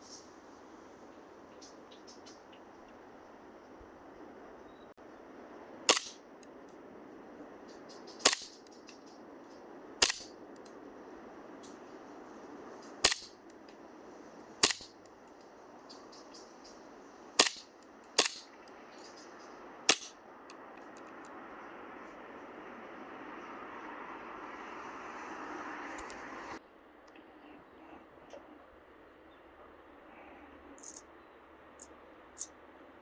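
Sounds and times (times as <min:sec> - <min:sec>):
airsoft pistol shots: 0:05.9 - 0:06.2, 0:08.2 - 0:08.6, 0:10.0 - 0:10.3, 0:13.0 - 0:13.3, 0:14.6 - 0:14.9, 0:17.4 - 0:18.5, 0:19.9 - 0:20.1.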